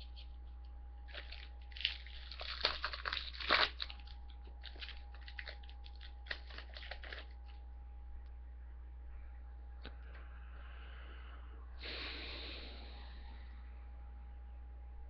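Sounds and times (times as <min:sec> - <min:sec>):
cards rustling and ticking: 0:00.0 - 0:07.6
foil wrapper tearing and crinkling: 0:01.1 - 0:07.6.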